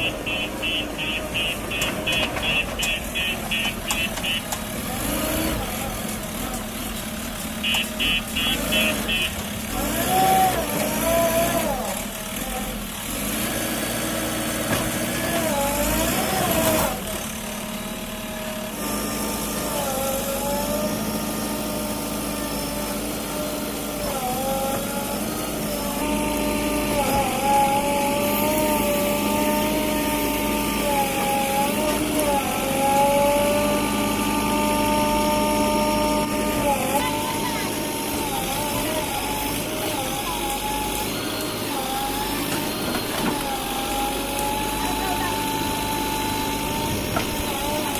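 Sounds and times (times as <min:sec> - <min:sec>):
diesel engine working: 0:00.0 - 0:47.9
hydraulic whine: 0:18.4 - 0:47.9.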